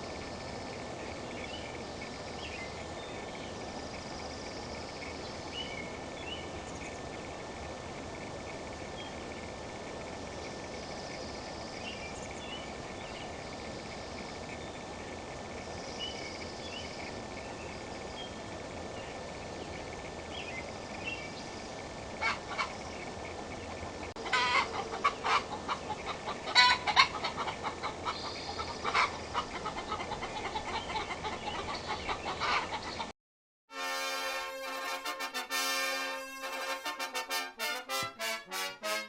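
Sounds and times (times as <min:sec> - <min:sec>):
steady outdoor hiss: 0:00.0 - 0:33.1, 0:33.7 - 0:39.0
hens clucking and squawking: 0:22.2 - 0:22.8, 0:24.2 - 0:33.1
music: 0:34.3 - 0:39.0.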